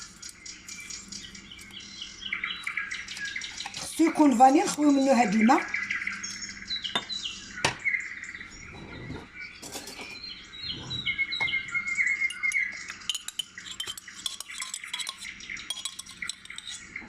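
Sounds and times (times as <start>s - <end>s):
birds chirping and singing: 0.0s - 17.0s
spoon clinking against bowl: 12.2s - 17.0s.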